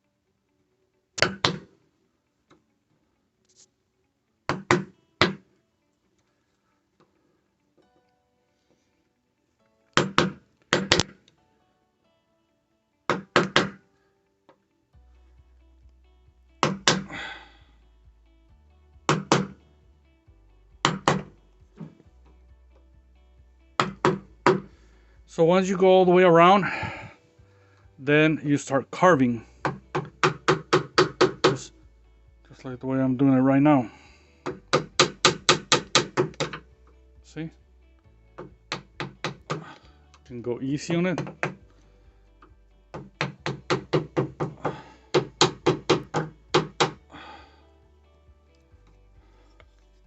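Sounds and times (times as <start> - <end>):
screwdriver knocking into wood: 13.1 - 13.8, 29.7 - 31.6, 38.4 - 39.6, 43.0 - 47.0.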